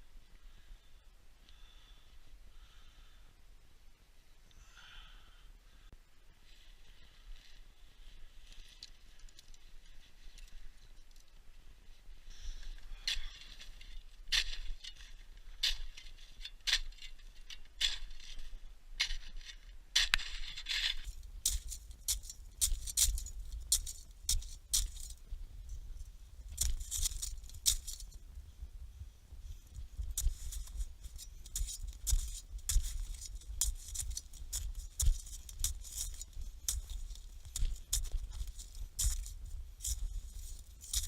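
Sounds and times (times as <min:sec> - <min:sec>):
footsteps crunching in snow: 0:12.4 - 0:41.0.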